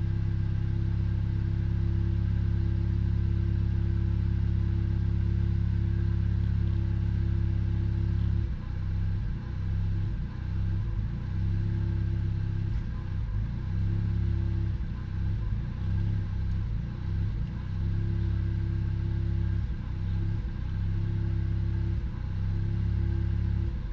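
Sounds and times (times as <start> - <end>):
car engine idling unevenly: 0.0 - 23.9.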